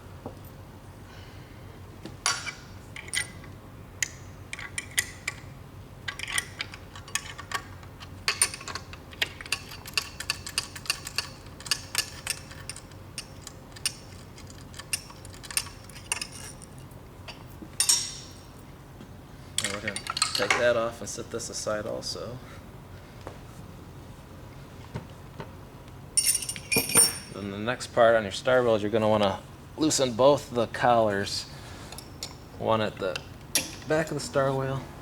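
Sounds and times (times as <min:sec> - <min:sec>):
hand tools clicking on metal: 0:06.1 - 0:18.3.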